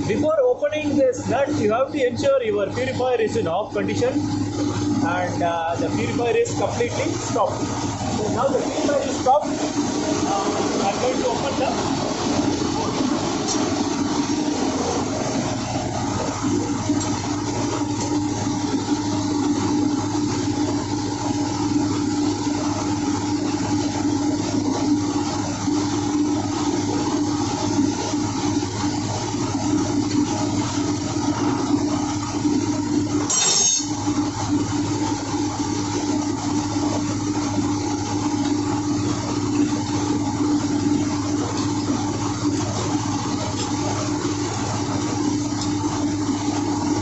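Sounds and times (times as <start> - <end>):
engine-room machinery drone: 0.0 - 47.0.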